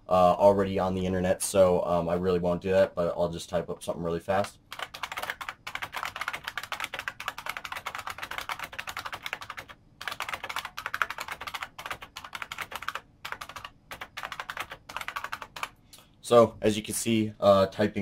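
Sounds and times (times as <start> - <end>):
clicky keyboard typing: 4.4 - 15.8.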